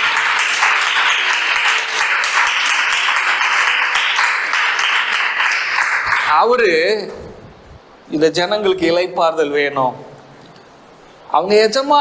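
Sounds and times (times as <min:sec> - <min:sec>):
crowd applauding: 0:00.0 - 0:06.3.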